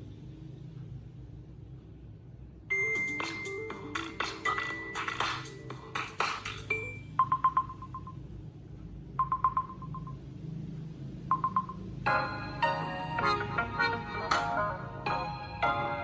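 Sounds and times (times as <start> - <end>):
phone alarm beeps: 6.7 - 8.2, 9.2 - 10.2, 11.3 - 11.8
melodic chiming alarm tone: 9.2 - 10.2.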